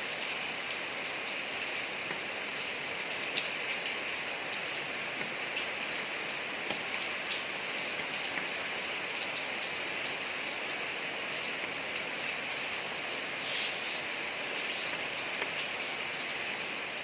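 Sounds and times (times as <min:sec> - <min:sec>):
steady rain hissing: 0:00.0 - 0:17.0
raindrop ticks: 0:00.7 - 0:09.7, 0:14.5 - 0:16.3.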